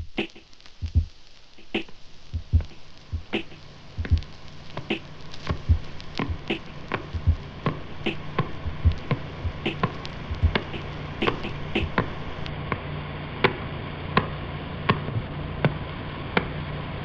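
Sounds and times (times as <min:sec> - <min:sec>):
kick and snare drum beat: 0:00.0 - 0:12.1.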